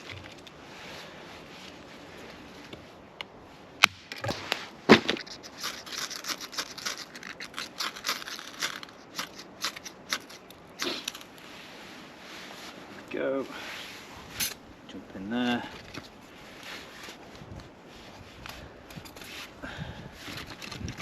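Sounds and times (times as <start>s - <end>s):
kindling snapping and crackling: 3.8s - 11.3s.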